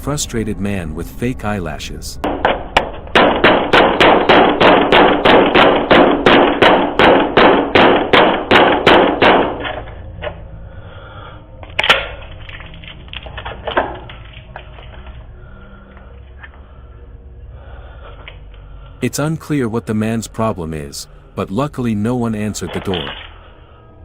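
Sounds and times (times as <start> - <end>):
loud pounding on a door: 2.3 - 9.7.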